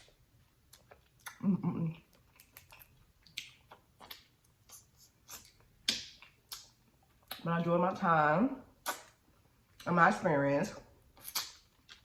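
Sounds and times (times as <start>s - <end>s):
lip smacks while chewing: 2.0s - 7.5s, 8.8s - 9.2s, 11.1s - 12.0s.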